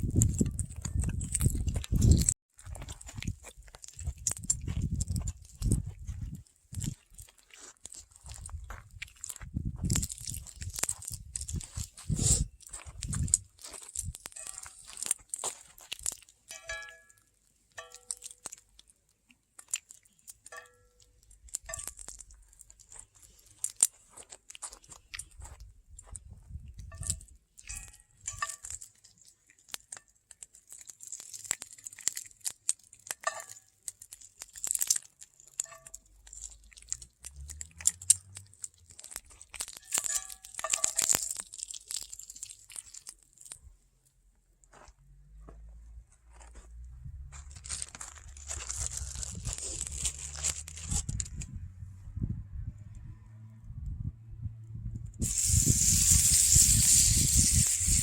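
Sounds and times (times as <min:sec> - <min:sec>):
wood fire crackling and popping: 0:09.9 - 0:16.7, 0:26.9 - 0:43.7, 0:55.2 - 0:58.0.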